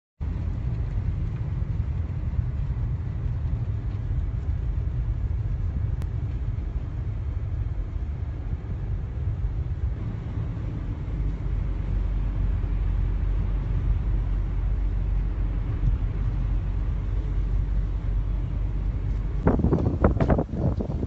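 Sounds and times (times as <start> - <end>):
strong wind buffeting microphone: 0.2 - 21.0.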